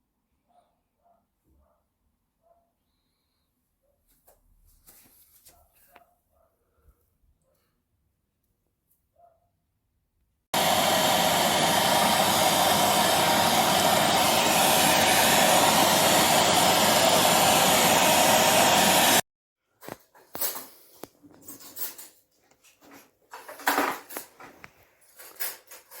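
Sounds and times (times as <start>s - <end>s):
vacuum cleaner motor running: 10.6s - 19.2s.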